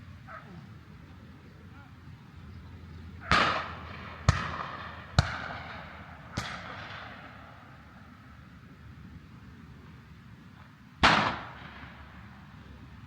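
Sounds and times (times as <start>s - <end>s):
shotgun shots echoing: 3.2s - 7.5s, 11.0s - 12.0s.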